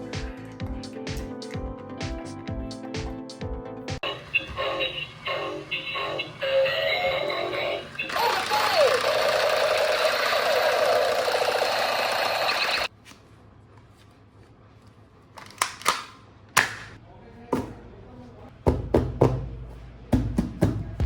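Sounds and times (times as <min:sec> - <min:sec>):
electronic toy buzzing: 0:04.1 - 0:12.9.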